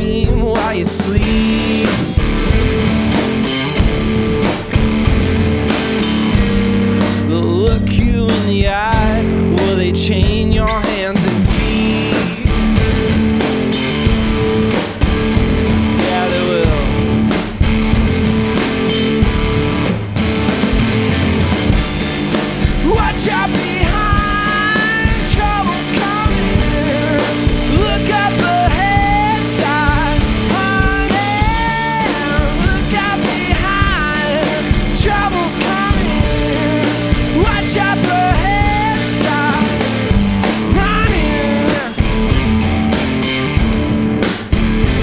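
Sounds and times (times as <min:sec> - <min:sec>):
person singing lead vocal: 0:00.0 - 0:03.0, 0:06.7 - 0:13.5, 0:15.8 - 0:17.2, 0:22.6 - 0:42.4
drum kit: 0:00.0 - 0:45.0
electric guitar: 0:00.0 - 0:45.0.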